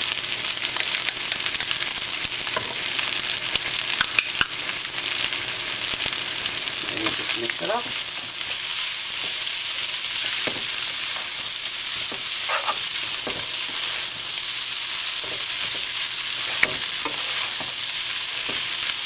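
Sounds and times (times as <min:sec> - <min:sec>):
rice sizzling in a pan: 0:00.0 - 0:19.0
utensil scraping pan: 0:12.0 - 0:14.2, 0:15.2 - 0:17.8.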